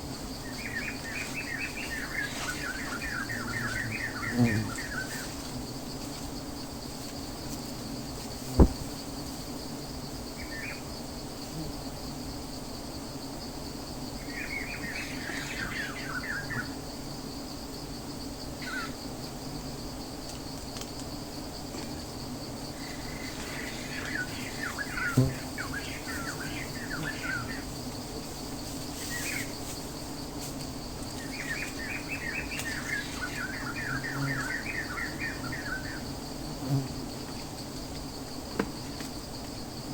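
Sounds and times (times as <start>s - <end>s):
songbirds chirping: 0.0s - 6.8s, 14.0s - 17.5s, 22.6s - 39.9s
high insect trill: 0.0s - 39.9s
sharp knocks: 8.6s - 8.8s.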